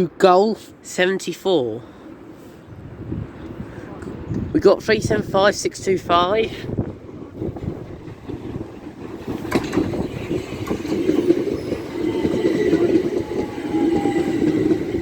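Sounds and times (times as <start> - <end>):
train wheels rumbling on rail: 4.0 - 15.0.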